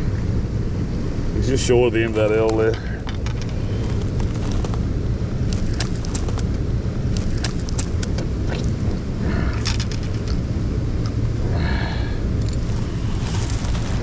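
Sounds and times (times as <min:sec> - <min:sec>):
wind buffeting microphone: 0:00.0 - 0:14.0
light clicks and ticks: 0:05.5 - 0:06.5.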